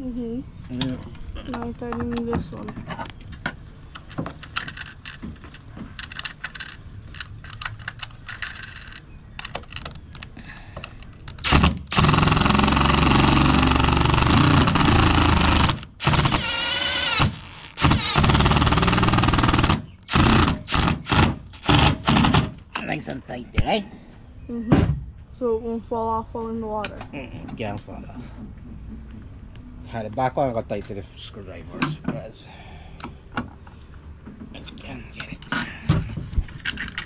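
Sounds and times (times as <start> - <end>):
power driver running: 10.2 - 22.4.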